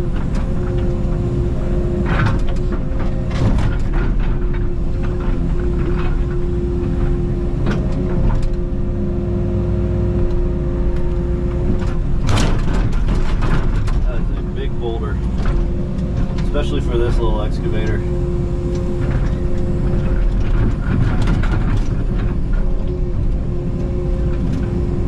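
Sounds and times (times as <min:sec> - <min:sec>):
excavator diesel engine running: 0:00.0 - 0:25.0
knocks and clattering: 0:02.1 - 0:06.5, 0:11.6 - 0:24.8
bucket working rock and dirt: 0:11.6 - 0:25.0.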